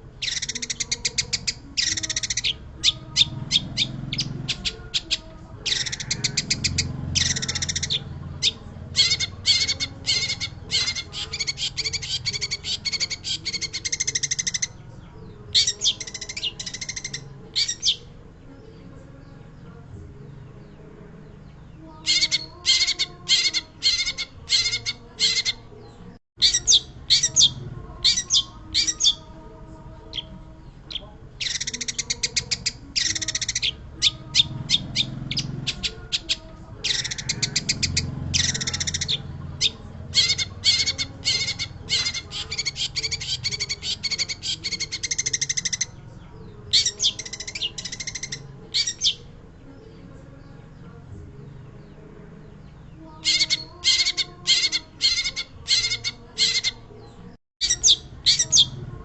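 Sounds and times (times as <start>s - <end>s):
shrike song harsh chattering trills: 0.0s - 14.9s, 15.5s - 18.2s, 22.0s - 25.7s, 30.0s - 49.3s, 53.2s - 56.9s.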